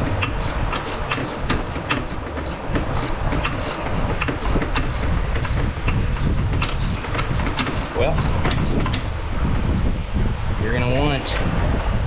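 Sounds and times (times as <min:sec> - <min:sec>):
socket ratchet clicking: 0:00.0 - 0:03.8, 0:04.4 - 0:09.1.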